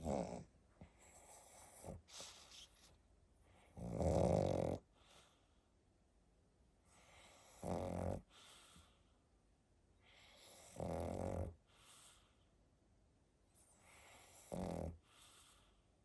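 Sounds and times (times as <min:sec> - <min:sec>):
dog snoring: 0:00.0 - 0:02.6, 0:03.5 - 0:05.4, 0:06.8 - 0:09.0, 0:10.0 - 0:12.4, 0:13.6 - 0:15.8
soft dog breaths: 0:00.0 - 0:04.2, 0:04.8 - 0:05.9, 0:06.7 - 0:12.7, 0:13.4 - 0:16.0.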